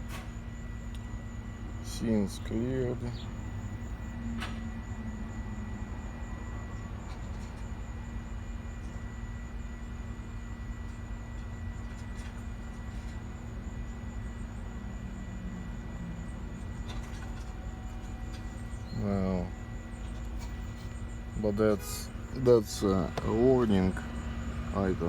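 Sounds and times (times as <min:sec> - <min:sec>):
car engine idling: 0:16.3 - 0:25.0.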